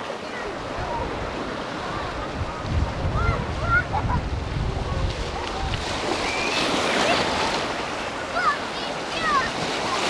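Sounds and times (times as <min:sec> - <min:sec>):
surf washing onto beach: 0:00.0 - 0:10.0
wind buffeting microphone: 0:00.4 - 0:08.4.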